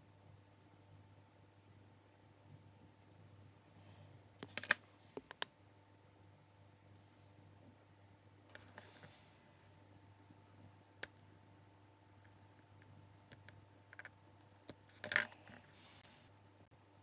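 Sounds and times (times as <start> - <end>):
faint steady hum: 0.0 - 17.0
small objects clicking and tapping: 4.4 - 5.5.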